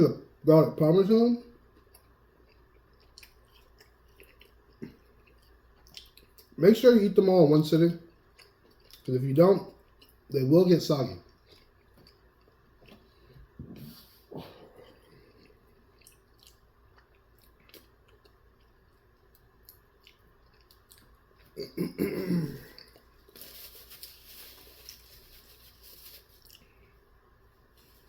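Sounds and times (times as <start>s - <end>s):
person chewing food: 1.6s - 6.6s, 8.1s - 9.1s, 9.7s - 10.3s, 11.2s - 24.0s, 26.3s - 27.0s.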